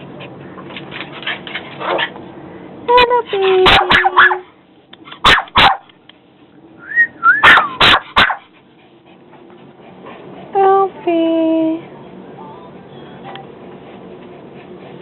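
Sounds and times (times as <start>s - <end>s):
dog barking: 3.6s - 4.5s, 5.1s - 5.9s, 7.4s - 8.5s
rising-and-falling whistled note: 6.8s - 7.4s.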